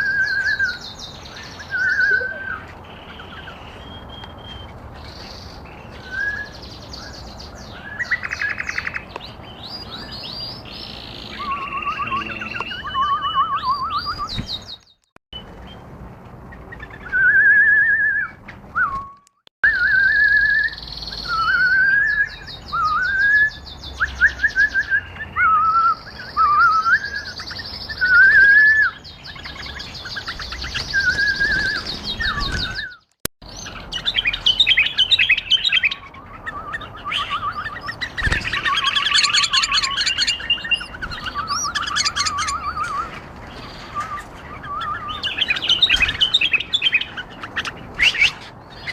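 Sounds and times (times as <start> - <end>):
high twittering trills: 0.0 - 15.9
bulbuls singing: 0.0 - 48.9.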